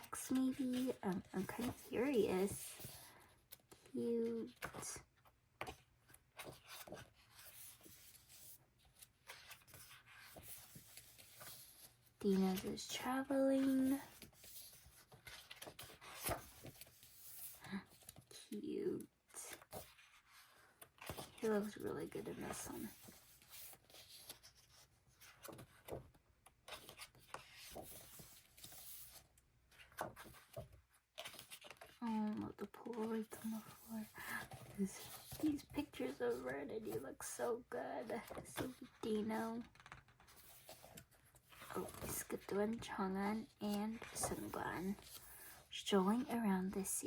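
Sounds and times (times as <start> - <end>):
glossy pages rustling and turning: 0.0 - 46.9
book pages rubbing and tapping: 38.2 - 42.4.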